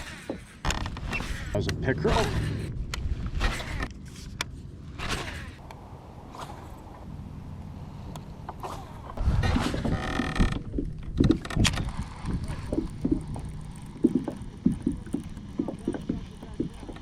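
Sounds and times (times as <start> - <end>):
brief whir: 1.1 - 4.0, 5.0 - 5.6.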